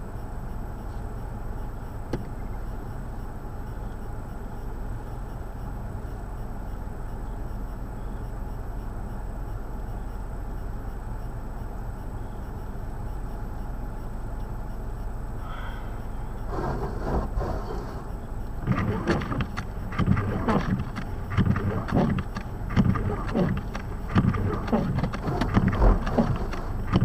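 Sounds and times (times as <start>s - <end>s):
low outdoor rumble: 0.0s - 27.0s
rustling bursts: 16.5s - 27.0s.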